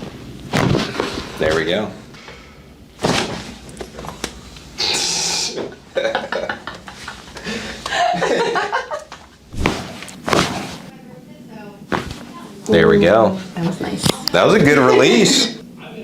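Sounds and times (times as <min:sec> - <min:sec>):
person vocalizing and exhaling: 0:04.8 - 0:05.7.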